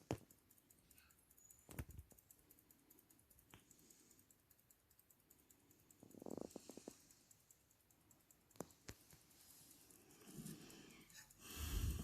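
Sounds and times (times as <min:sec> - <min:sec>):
pocket watch ticking: 0:00.0 - 0:12.0.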